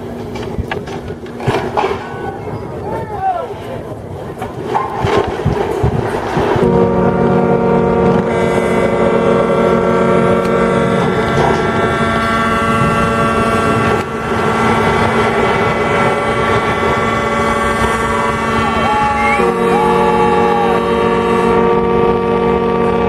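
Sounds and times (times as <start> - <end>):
ships' horns blowing: 6.4 - 23.0.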